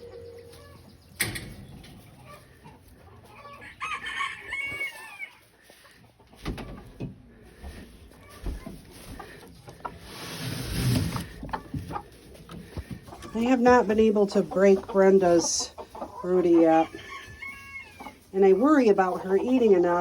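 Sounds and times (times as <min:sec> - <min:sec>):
chickens clucking: 0:00.0 - 0:20.0
drawn-out wavering chicken call: 0:03.2 - 0:05.4, 0:16.8 - 0:18.2.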